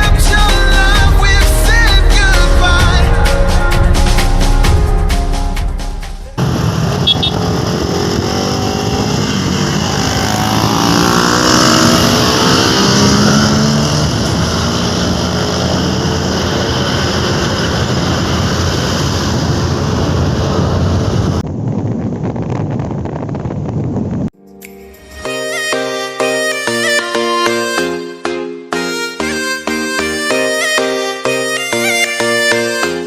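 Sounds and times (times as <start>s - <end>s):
motorcycle engine: 6.2s - 24.3s
wind rush on microphone: 6.4s - 24.4s.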